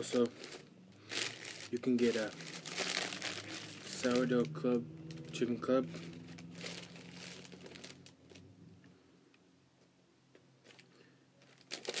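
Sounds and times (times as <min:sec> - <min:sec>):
sandwich wrapper crinkling: 0:00.0 - 0:05.3, 0:05.9 - 0:08.4, 0:10.6 - 0:12.0
low steady hum: 0:00.0 - 0:11.7.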